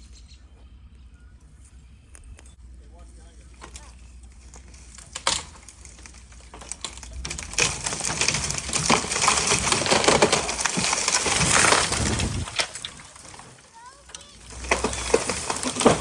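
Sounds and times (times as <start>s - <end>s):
falling tree wood cracking: 3.5s - 16.0s.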